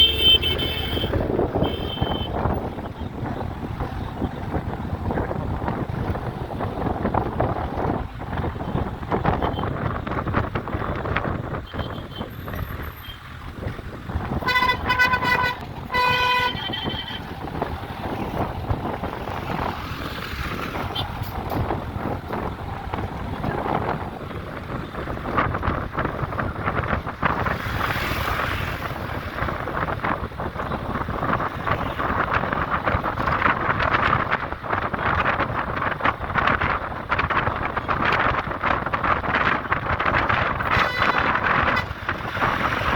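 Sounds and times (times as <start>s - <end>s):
vehicle horn honking: 0.0s - 2.6s, 11.6s - 12.4s, 14.4s - 17.3s, 40.6s - 42.1s
road traffic noise: 0.0s - 42.9s
wind on microphone: 0.0s - 42.9s.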